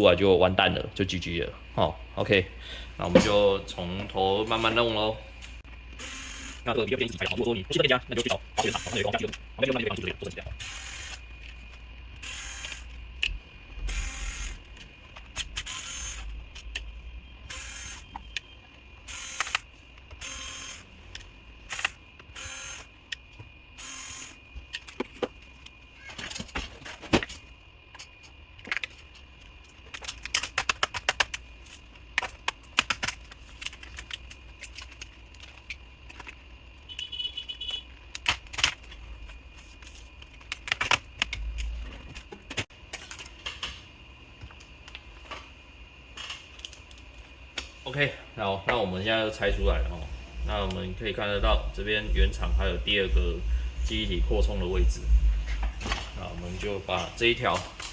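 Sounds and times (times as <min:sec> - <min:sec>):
sharp plastic clicks: 0:29.8 - 0:31.4.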